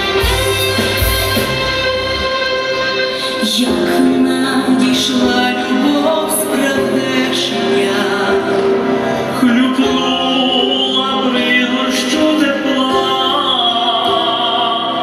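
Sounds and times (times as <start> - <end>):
instrumental backing: 0.0 - 15.0
vocal duet singing: 3.2 - 15.0.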